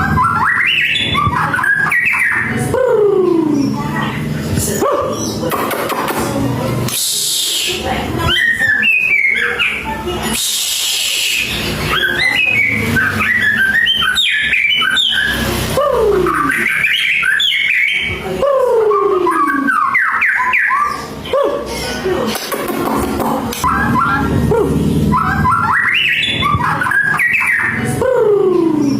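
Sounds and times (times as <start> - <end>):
bird singing chirps and whistles: 0.0 - 2.6, 6.9 - 15.5, 16.1 - 18.2, 18.9 - 21.1, 23.6 - 24.4, 25.1 - 27.9.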